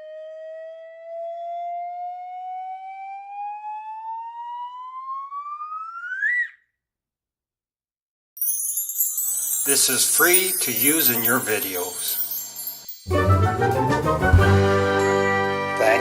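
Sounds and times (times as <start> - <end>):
whistle gliding upward: 5.1 - 6.6.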